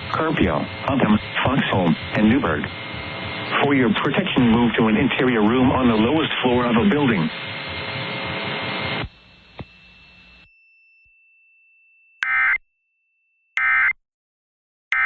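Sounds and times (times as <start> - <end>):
radio hiss: 0.0 - 10.4.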